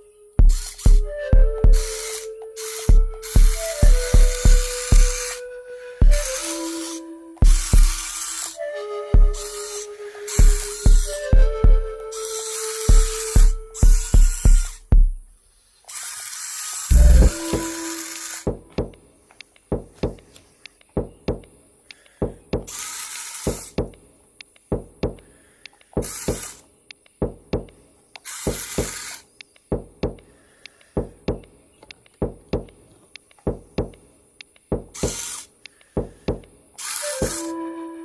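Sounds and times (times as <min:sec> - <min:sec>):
background music with drum hits: 0:00.4 - 0:02.2, 0:02.8 - 0:05.4, 0:06.0 - 0:06.6, 0:07.4 - 0:08.2, 0:09.1 - 0:09.6, 0:10.3 - 0:12.2, 0:12.9 - 0:15.4, 0:16.9 - 0:17.8, 0:18.4 - 0:19.0, 0:37.1 - 0:37.5
short hissing swells: 0:09.3 - 0:11.2.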